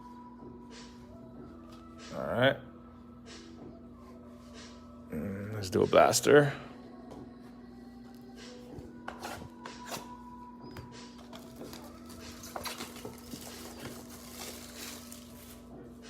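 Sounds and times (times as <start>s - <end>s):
steady low hum: 0.0s - 16.0s
cardboard and plastic wrapping rustling: 11.2s - 15.9s.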